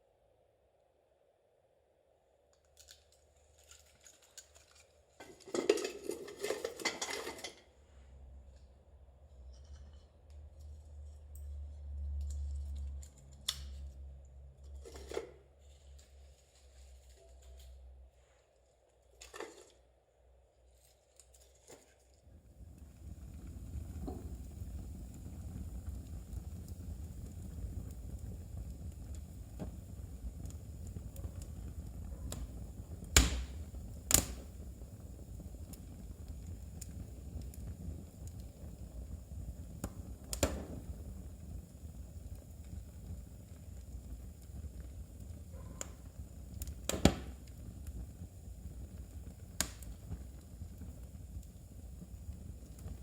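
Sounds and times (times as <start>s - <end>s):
wood fire burning: 2.6s - 53.0s
crackling pops: 23.8s - 53.0s.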